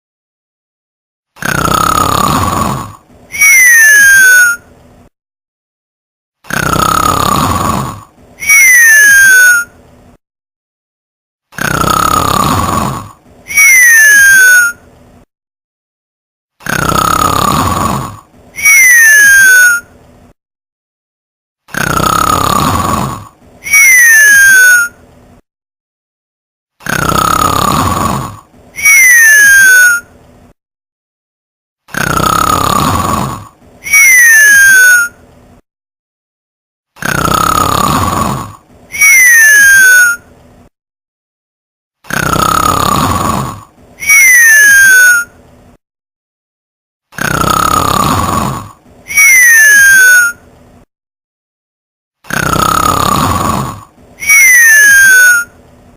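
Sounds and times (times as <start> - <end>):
rasping snore: 1.4 - 3.0, 6.4 - 8.1, 11.5 - 13.2, 16.6 - 18.3, 21.7 - 23.4, 26.8 - 28.5, 31.9 - 33.6, 37.0 - 38.6, 42.0 - 43.7, 47.1 - 48.8, 52.2 - 53.9.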